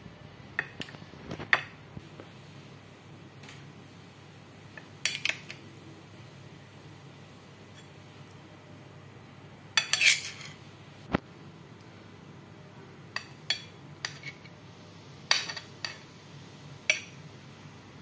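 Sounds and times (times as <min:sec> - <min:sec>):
utensils clinking against dishes: 0:09.8 - 0:10.6.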